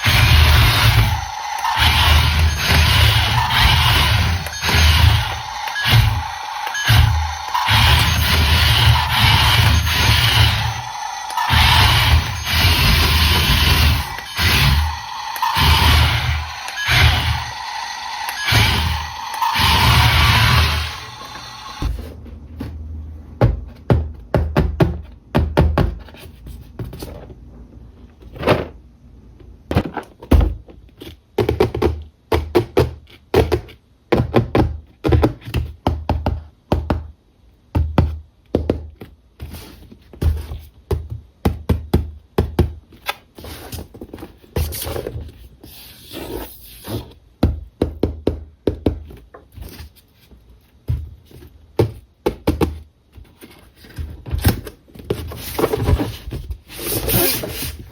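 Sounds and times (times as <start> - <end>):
toy cars and plastic packaging handled: 53.1 - 57.9.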